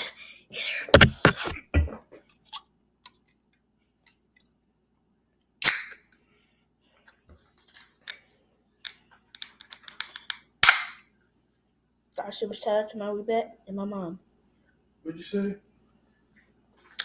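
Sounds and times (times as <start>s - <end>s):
sharp knock: 1.0s - 1.9s.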